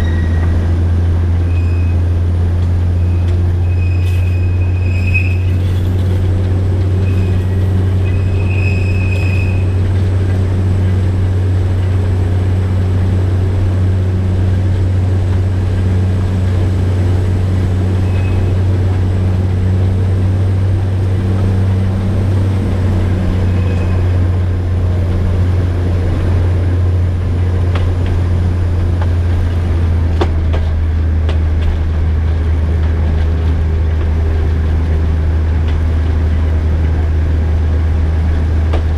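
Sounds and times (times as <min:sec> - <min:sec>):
high wheel squeals: 0:00.0 - 0:00.8, 0:01.4 - 0:02.2, 0:02.9 - 0:06.4, 0:07.0 - 0:09.9, 0:17.8 - 0:18.8, 0:23.0 - 0:24.5
diesel locomotive drone: 0:00.0 - 0:38.9.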